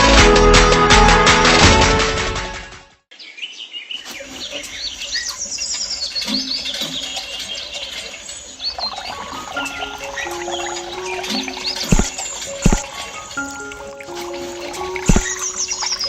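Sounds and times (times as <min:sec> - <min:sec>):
music: 0:00.0 - 0:03.0, 0:09.6 - 0:16.0
small birds chirping: 0:03.1 - 0:16.0.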